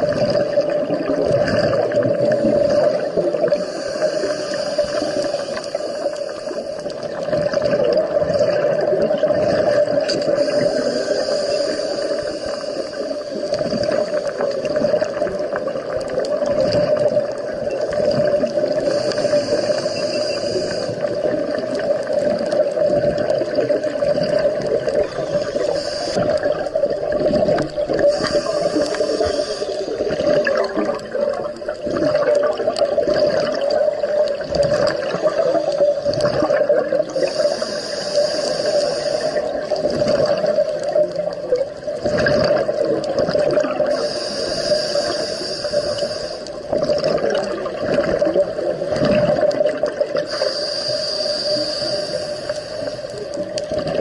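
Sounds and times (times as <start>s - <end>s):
exhaled bubbles gurgling: 0.0s - 54.0s
regulator hiss: 2.3s - 7.2s, 10.2s - 15.6s, 17.2s - 32.4s, 34.8s - 41.5s, 43.6s - 46.7s, 50.1s - 53.6s.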